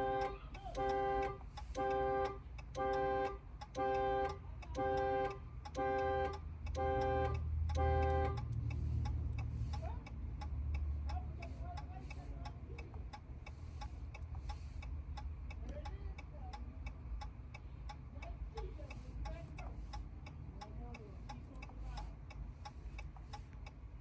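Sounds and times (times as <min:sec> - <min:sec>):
car horn alarm pulsing: 0:00.0 - 0:08.5.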